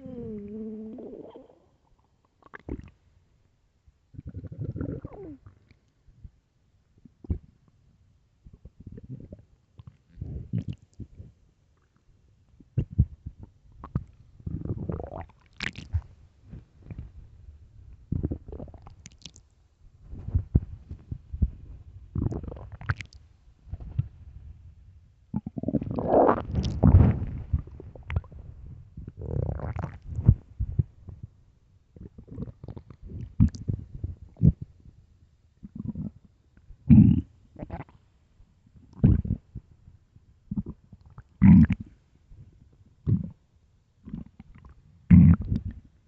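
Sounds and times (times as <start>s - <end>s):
stomach growling and gurgling: 0.0s - 3.0s, 4.1s - 5.8s, 7.1s - 7.7s, 8.4s - 11.9s, 12.6s - 17.2s, 18.0s - 19.4s, 20.1s - 24.2s, 25.3s - 31.3s, 31.9s - 34.9s, 35.6s - 38.0s, 38.8s - 39.6s, 40.5s - 41.9s, 43.0s - 43.4s, 44.0s - 46.0s.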